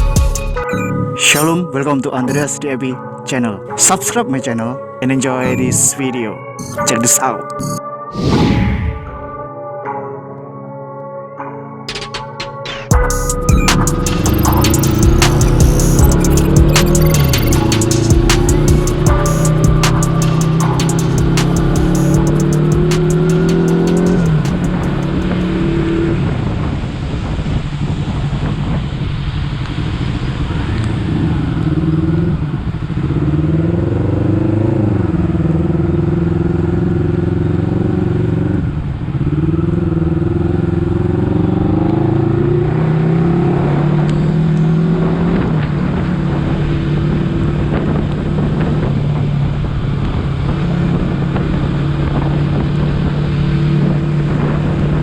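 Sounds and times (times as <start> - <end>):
motorcycle engine accelerating: 12.9 - 28.3, 30.0 - 55.0
wind and road noise: 14.2 - 55.0.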